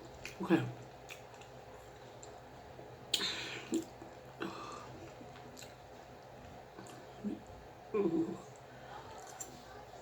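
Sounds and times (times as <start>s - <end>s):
wet mouth eating sounds: 0.0s - 2.5s, 3.1s - 7.5s.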